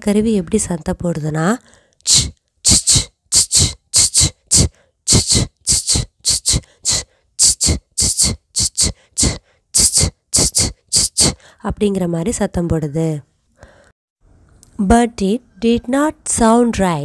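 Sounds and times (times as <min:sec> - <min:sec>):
person imitating shaker with mouth: 0:02.0 - 0:11.4.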